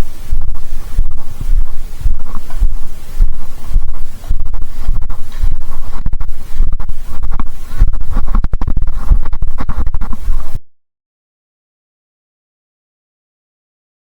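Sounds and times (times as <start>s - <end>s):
low thumps: 0.0s - 10.6s
scratching and rubbing: 0.0s - 10.6s.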